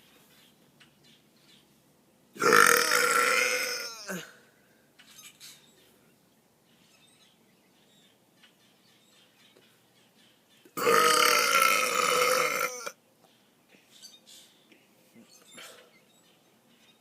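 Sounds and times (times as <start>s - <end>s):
loud burp: 2.4s - 4.4s, 10.8s - 13.0s.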